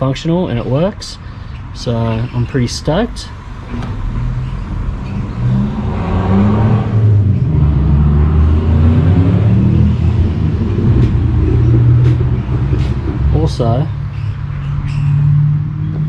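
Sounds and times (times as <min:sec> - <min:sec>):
car engine running: 0:07.0 - 0:16.0.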